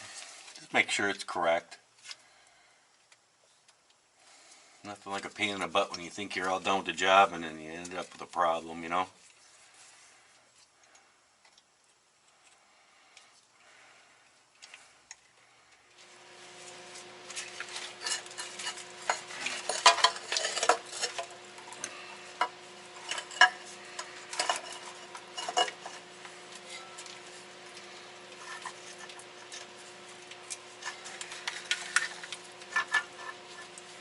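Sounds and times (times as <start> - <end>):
steady hum: 0.0 - 34.0
metal tools clinking and rattling: 18.0 - 21.2, 23.0 - 26.0.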